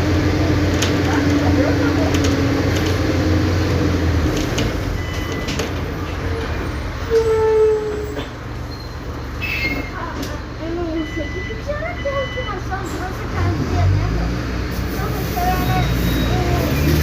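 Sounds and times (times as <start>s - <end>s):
bus diesel engine running: 0.0s - 17.0s
brief squeal: 7.0s - 10.0s.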